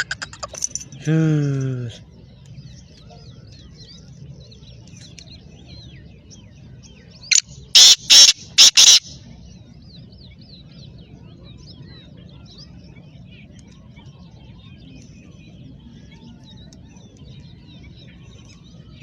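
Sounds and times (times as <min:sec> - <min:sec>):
small birds chirping: 0:00.0 - 0:19.0
francolin harsh grating call: 0:07.3 - 0:09.2.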